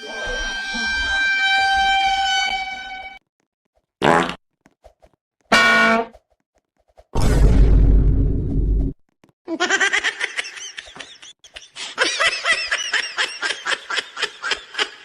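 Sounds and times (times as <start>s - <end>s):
loud deep sound: 7.2s - 8.9s
high-pitched laughing: 9.5s - 15.0s.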